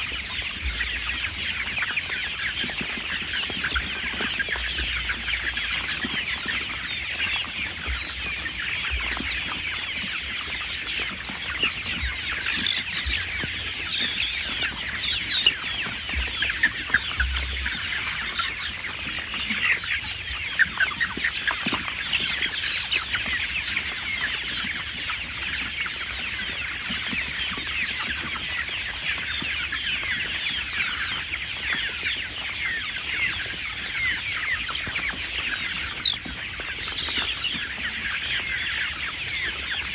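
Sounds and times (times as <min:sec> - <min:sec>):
chicks peeping and cheeping: 0:00.0 - 0:39.9.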